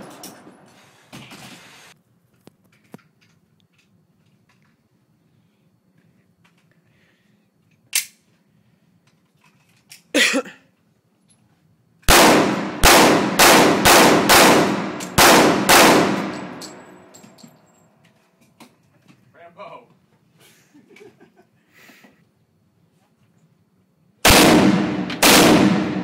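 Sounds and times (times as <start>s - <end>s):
rifle shots ringing out: 12.1s - 17.1s, 24.2s - 26.0s.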